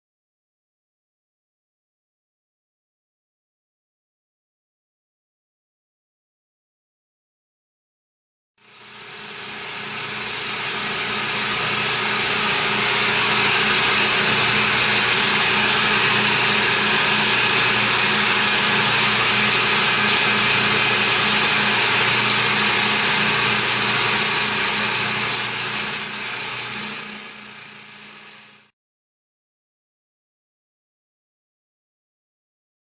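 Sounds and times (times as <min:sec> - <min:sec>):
milling machine running: 0:08.6 - 0:28.7.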